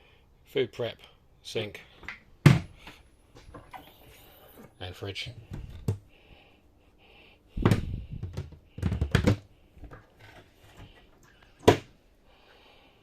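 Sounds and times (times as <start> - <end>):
knocks and thuds: 2.4 - 2.7, 7.6 - 9.5.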